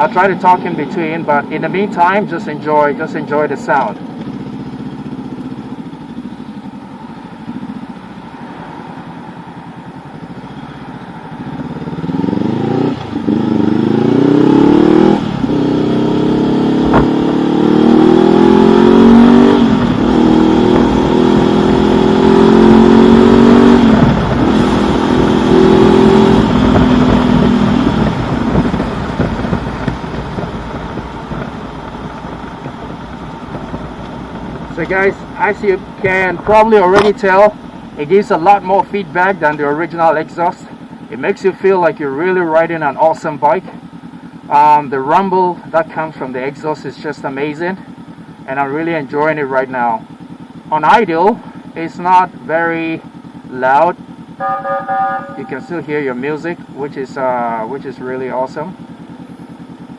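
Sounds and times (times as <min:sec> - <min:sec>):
motorcycle engine accelerating: 0:00.0 - 0:41.2, 0:53.0 - 0:57.6.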